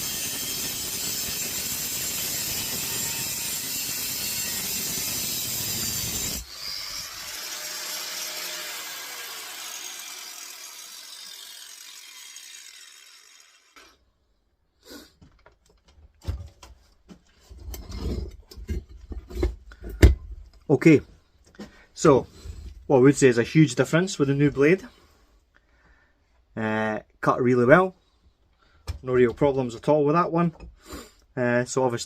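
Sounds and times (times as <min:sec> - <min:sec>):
angle grinder spinning down: 0:00.0 - 0:14.0
knocks and clatter of handling: 0:15.2 - 0:20.6.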